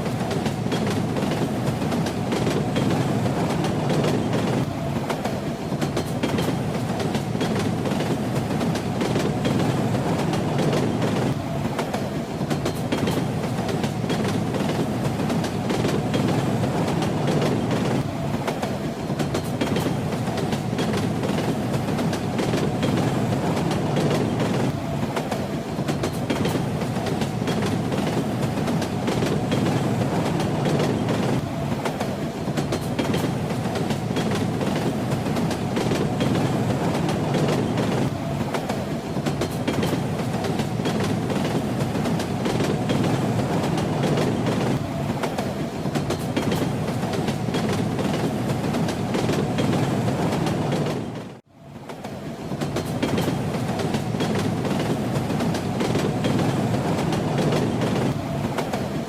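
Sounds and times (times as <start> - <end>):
train wheels clattering: 0.0 - 51.3
train rumbling on rails: 0.0 - 59.0.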